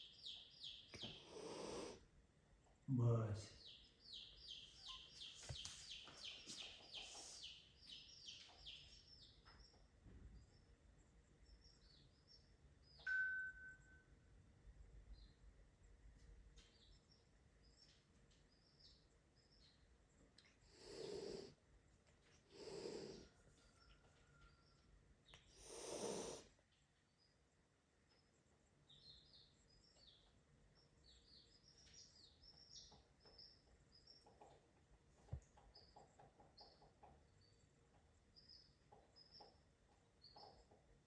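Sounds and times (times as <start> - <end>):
cat hissing: 1.2 - 2.0, 20.7 - 21.5, 22.5 - 23.2, 25.6 - 26.5
faint high chirps: 11.4 - 14.4.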